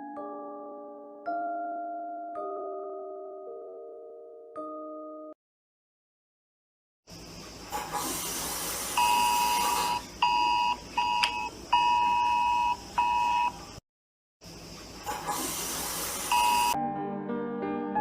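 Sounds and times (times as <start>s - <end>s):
steady hiss: 7.1s - 10.2s, 14.4s - 16.7s.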